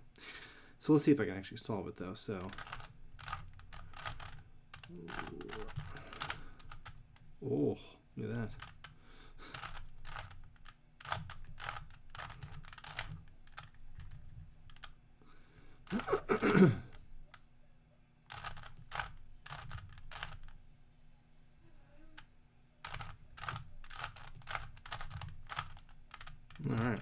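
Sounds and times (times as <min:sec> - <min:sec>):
plastic puzzle cube clicking: 0:02.4 - 0:07.0, 0:08.5 - 0:15.0, 0:18.3 - 0:20.6, 0:22.2 - 0:27.0.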